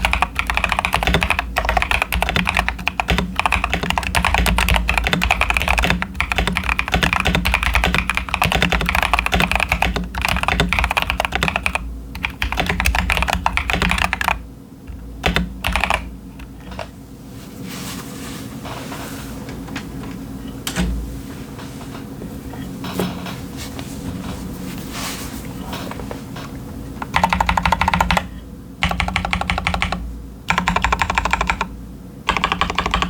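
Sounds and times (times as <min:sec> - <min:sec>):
fast typing on mechanical keyboard: 0:00.0 - 0:16.9, 0:27.1 - 0:31.7, 0:32.3 - 0:33.0.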